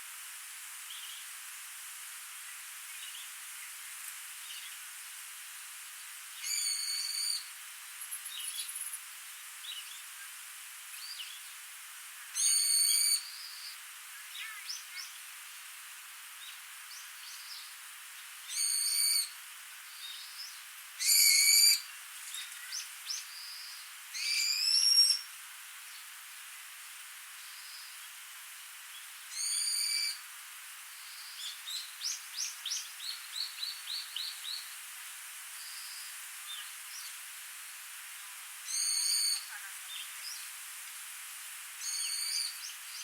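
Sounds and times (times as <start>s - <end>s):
small stream hissing: 0.0s - 43.0s
faint bird chirps: 20.0s - 25.3s, 38.7s - 40.5s, 41.8s - 43.0s.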